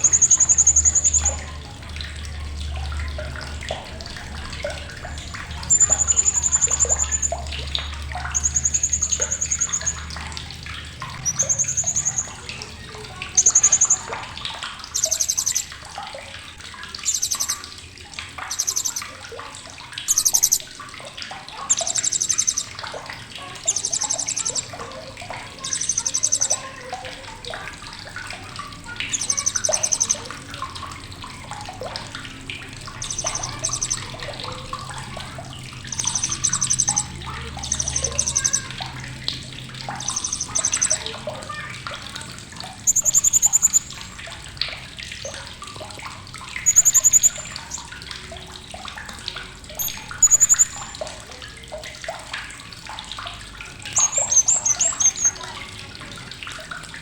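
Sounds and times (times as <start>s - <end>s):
parrot chattering trills: 0.0s - 1.6s, 5.2s - 10.2s, 11.2s - 15.8s, 17.0s - 17.7s, 18.4s - 19.1s, 20.0s - 20.7s, 21.6s - 22.8s, 23.4s - 27.3s, 28.9s - 30.3s, 32.9s - 35.2s, 35.8s - 44.2s, 46.6s - 47.9s, 49.7s - 51.0s, 53.9s - 55.6s.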